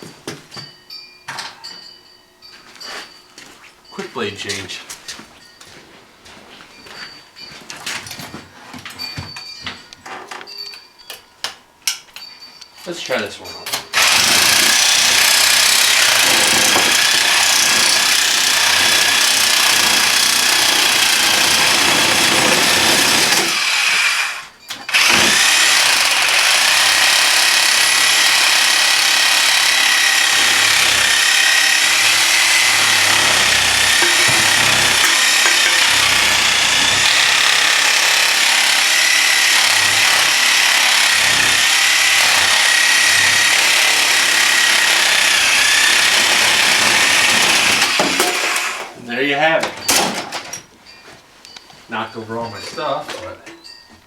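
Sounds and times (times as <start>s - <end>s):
reciprocating saw cutting metal: 13.9s - 49.0s.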